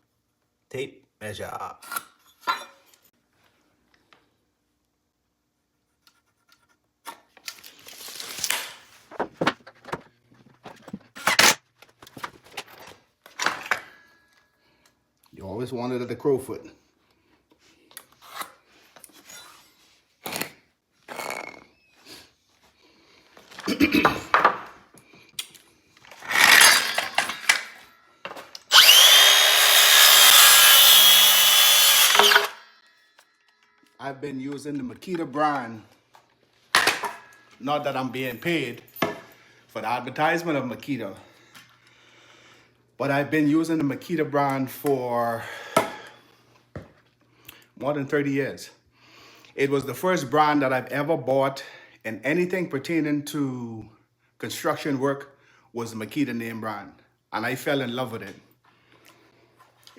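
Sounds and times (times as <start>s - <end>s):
tape measure clacks: 26.2s - 27.7s
power saw cutting wood: 26.2s - 27.8s, 28.7s - 32.8s
tape measure blade sliding out: 26.2s - 27.8s, 28.7s - 32.6s.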